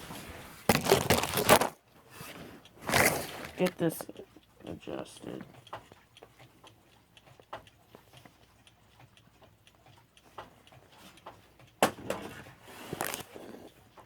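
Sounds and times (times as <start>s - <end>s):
handling noise: 0.7s - 1.8s, 2.8s - 3.8s
clock ticking: 2.6s - 14.0s.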